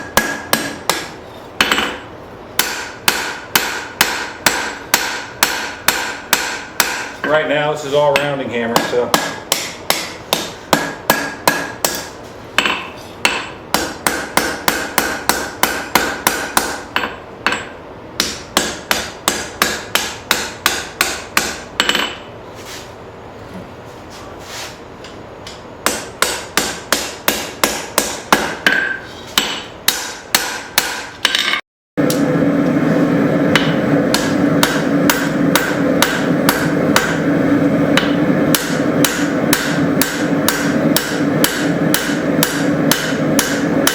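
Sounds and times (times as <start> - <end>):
hammer striking steel on anvil: 0.0 - 7.4, 8.0 - 22.3, 25.4 - 43.9
steady rushing noise: 32.0 - 43.9.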